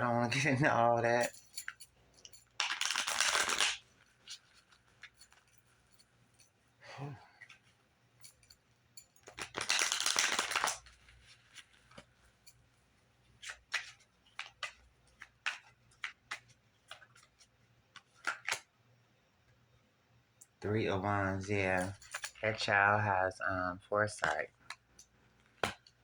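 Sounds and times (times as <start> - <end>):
cards snapping and tapping: 2.6 - 3.8, 9.2 - 10.9, 13.4 - 17.3, 18.0 - 18.7, 25.4 - 26.0
cards shuffling: 2.6 - 5.4, 9.2 - 12.2, 13.4 - 18.7.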